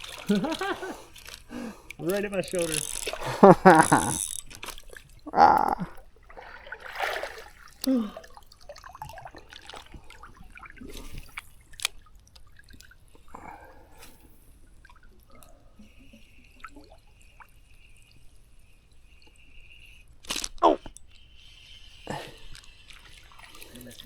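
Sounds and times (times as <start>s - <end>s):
light clicks: 0.0s - 5.1s
water dripping and splashing: 0.0s - 13.5s, 16.4s - 24.0s.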